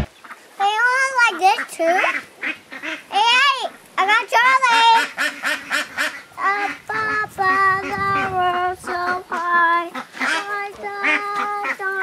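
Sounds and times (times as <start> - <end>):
child singing: 0.6 - 2.0, 3.1 - 5.1, 6.4 - 12.0.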